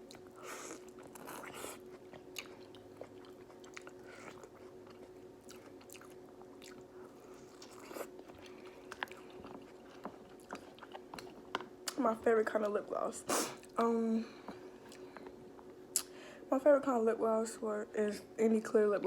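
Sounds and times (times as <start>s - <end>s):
person chewing food: 0.0s - 12.0s, 13.6s - 16.1s
faint steady hum: 0.0s - 19.0s
mouth clicks and crunches: 7.5s - 12.0s.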